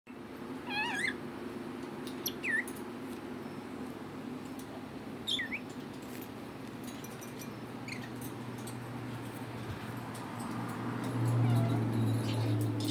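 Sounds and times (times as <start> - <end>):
parrot squeaky whistled calls: 0.7 - 1.2, 2.2 - 2.7, 5.2 - 5.7.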